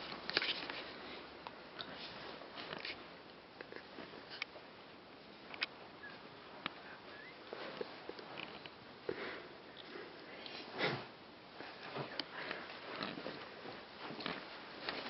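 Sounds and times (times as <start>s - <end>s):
faint rustling: 0.0s - 15.0s.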